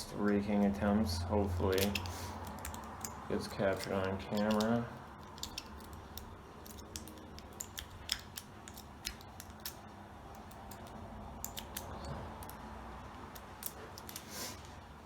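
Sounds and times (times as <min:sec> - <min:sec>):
lock pick clicking and scraping: 0:01.7 - 0:12.6, 0:13.3 - 0:14.3.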